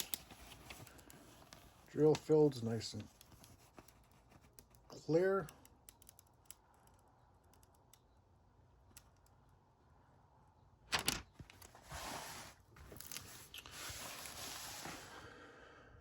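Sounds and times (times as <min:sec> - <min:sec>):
plastic covering crinkling: 0:00.0 - 0:02.3, 0:10.9 - 0:15.1.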